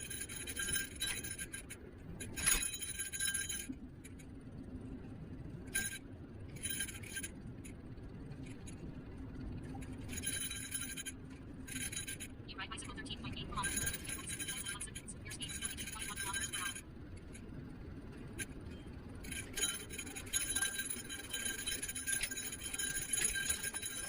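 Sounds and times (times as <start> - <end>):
metallic jingling and rattling: 0.0 - 4.3, 5.6 - 24.0
electric scooter rumble: 0.0 - 12.5, 13.4 - 24.0.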